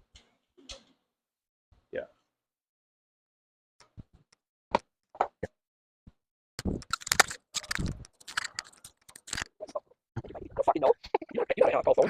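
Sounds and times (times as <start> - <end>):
metal parts clattering: 6.6 - 9.5
tools clicking and knocking: 6.6 - 9.5.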